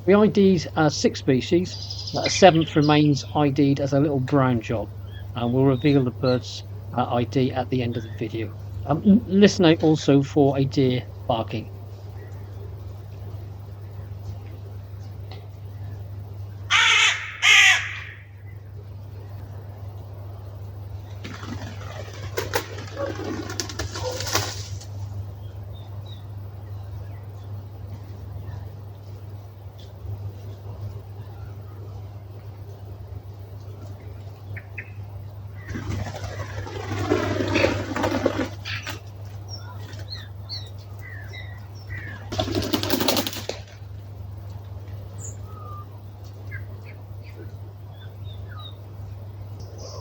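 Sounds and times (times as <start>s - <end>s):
birds chirping: 0.0s - 50.0s
steady low hum: 0.0s - 50.0s
short bird calls: 16.6s - 18.7s
birds flapping wings: 21.1s - 25.2s, 35.6s - 40.1s, 42.0s - 44.0s.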